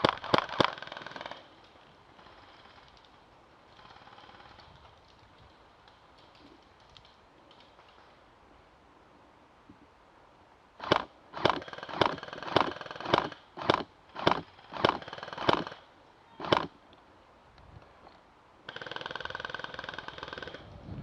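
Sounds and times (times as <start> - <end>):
airsoft gun firing bursts: 0.0 - 1.5, 10.8 - 15.8, 16.4 - 16.7, 18.7 - 20.6.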